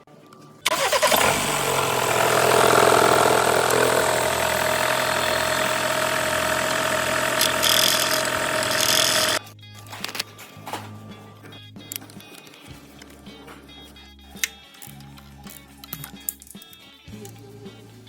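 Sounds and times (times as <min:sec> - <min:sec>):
van engine starting and idling: 0:00.7 - 0:09.4
belt drive crackling and knocking: 0:01.7 - 0:09.4.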